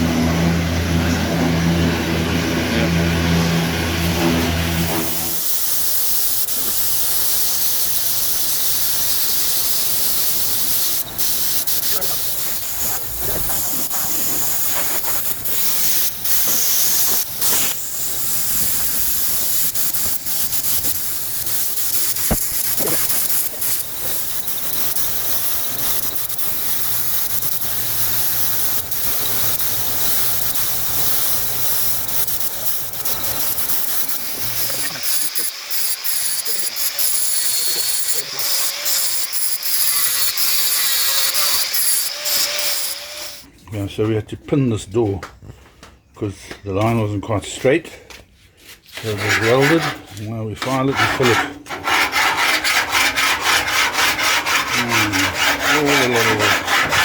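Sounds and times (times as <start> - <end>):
machine hum with low drone: 0.0 - 5.3
compressed air hissing from air tool: 4.8 - 43.5.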